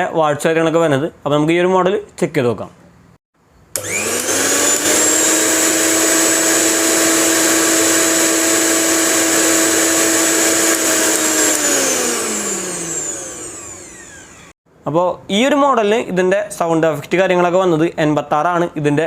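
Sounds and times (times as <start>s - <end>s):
mixer grinder motor whining: 3.8s - 14.6s.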